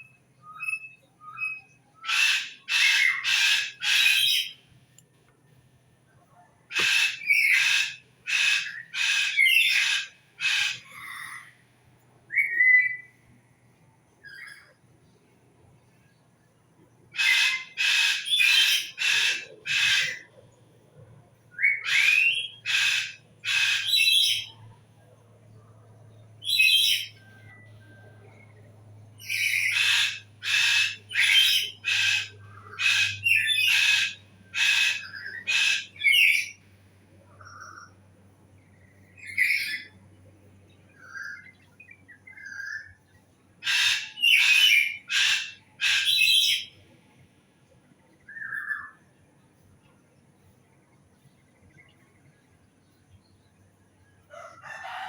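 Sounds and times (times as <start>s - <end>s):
bird calling repeated notes: 6.7s - 11.3s, 21.6s - 24.6s, 43.6s - 46.7s.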